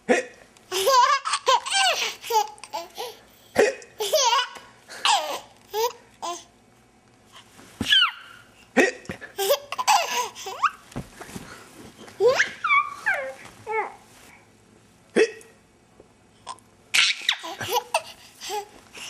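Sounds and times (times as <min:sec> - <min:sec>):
child giggling: 0:17.0 - 0:18.6.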